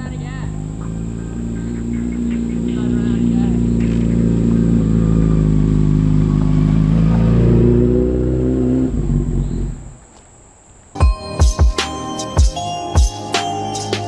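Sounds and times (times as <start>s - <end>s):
motorcycle engine running: 0.0s - 9.8s.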